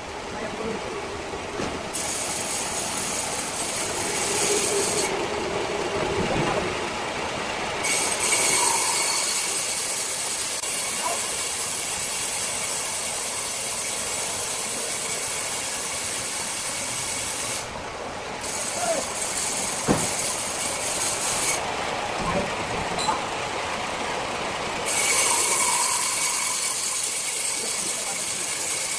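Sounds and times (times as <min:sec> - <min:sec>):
circular saw cutting wood: 0:01.9 - 0:05.3, 0:07.8 - 0:17.7, 0:18.4 - 0:21.7, 0:24.8 - 0:28.9.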